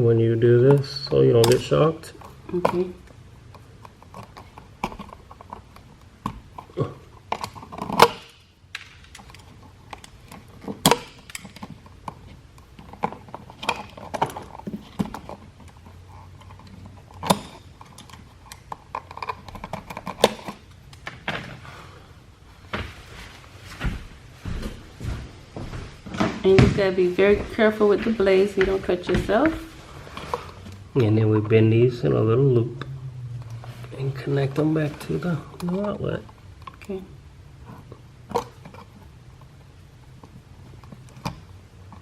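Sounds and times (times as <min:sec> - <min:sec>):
hand tools clicking and scraping: 0:00.8 - 0:21.8.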